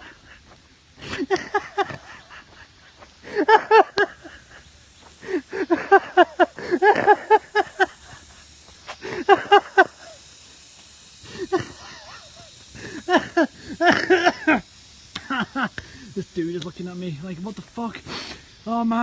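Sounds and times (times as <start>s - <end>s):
man laughing: 0.0s - 8.3s, 8.9s - 10.3s, 11.2s - 16.4s.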